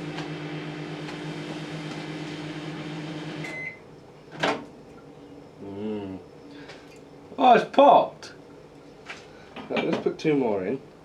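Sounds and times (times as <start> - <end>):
microwave oven humming: 0.0 - 9.5
microwave beep: 3.3 - 3.9.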